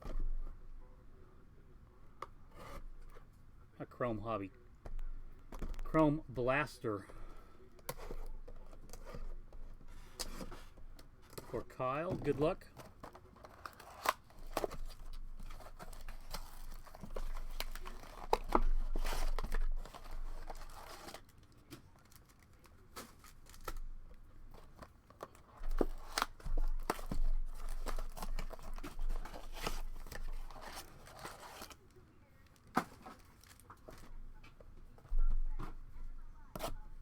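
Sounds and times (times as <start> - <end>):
foil wrappers tearing and crinkling: 12.4 - 23.9, 25.2 - 32.0, 32.6 - 34.1.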